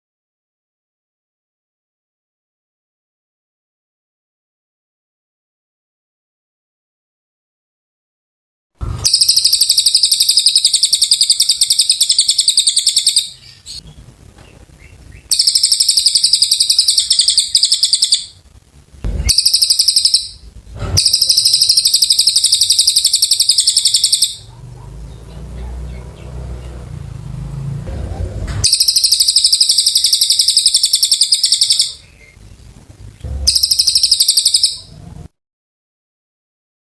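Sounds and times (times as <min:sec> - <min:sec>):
songbird high-pitched trills: 0:09.0 - 0:13.8, 0:14.8 - 0:18.4, 0:19.2 - 0:20.4, 0:21.0 - 0:24.5, 0:28.6 - 0:32.4, 0:33.4 - 0:35.0.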